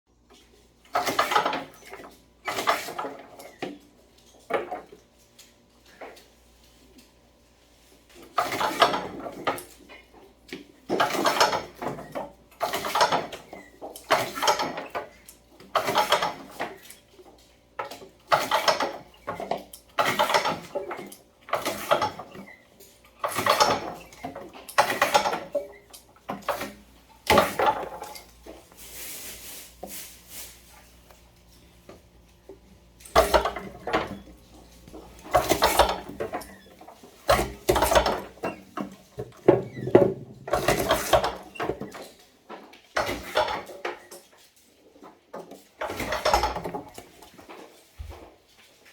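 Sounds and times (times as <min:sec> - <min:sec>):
pit-removing machine clattering: 0:33.0 - 0:41.9.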